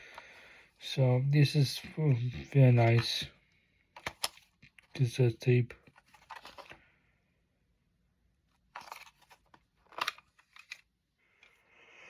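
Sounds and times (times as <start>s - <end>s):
cassette tape clicking and crinkling: 4.0s - 5.0s, 5.8s - 6.8s, 8.8s - 10.9s.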